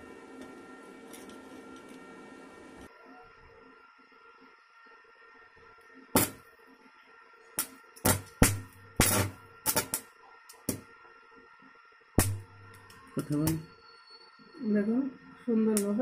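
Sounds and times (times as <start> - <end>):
faint steady hum: 0.0 - 16.0
welding arc crackling: 6.1 - 6.5, 7.6 - 10.9, 12.2 - 13.7.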